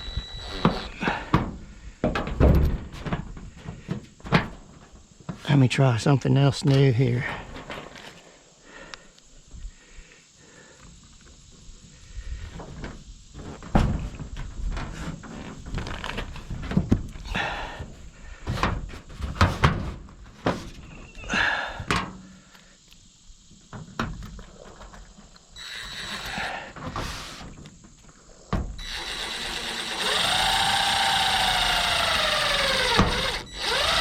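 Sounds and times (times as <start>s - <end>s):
screws being driven: 0.0s - 1.1s, 25.6s - 27.4s, 28.8s - 34.0s.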